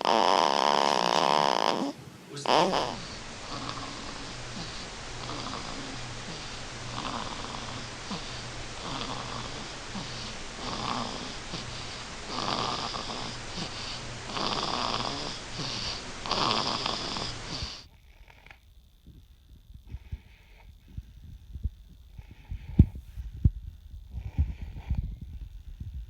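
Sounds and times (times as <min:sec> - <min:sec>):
baby snoring: 0:00.0 - 0:18.6, 0:24.1 - 0:25.4.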